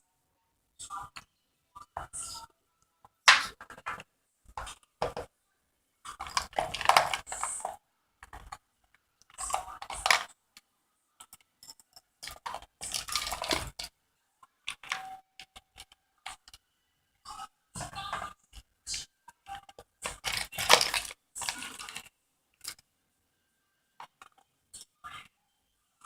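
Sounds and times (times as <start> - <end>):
plastic toys clattering: 6.1 - 8.6, 9.3 - 10.3, 11.2 - 13.9, 14.6 - 16.5, 19.6 - 22.8.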